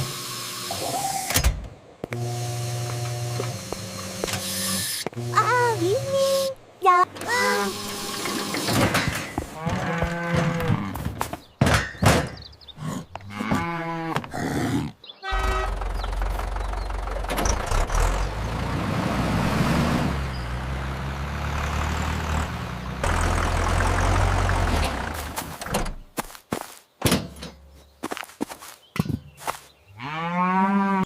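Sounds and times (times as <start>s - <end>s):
cattle mooing: 9.3s - 11.1s, 12.8s - 15.8s, 30.0s - 31.0s.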